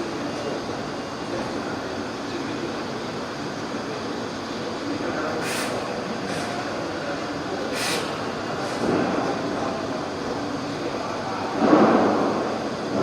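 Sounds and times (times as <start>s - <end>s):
laser cutting machine running: 0.0s - 13.0s
short hisses: 5.4s - 6.5s, 7.6s - 8.8s.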